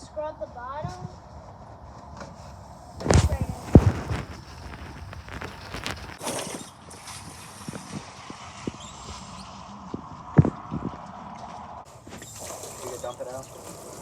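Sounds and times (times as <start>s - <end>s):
towel rubbing and clicks: 3.0s - 6.4s.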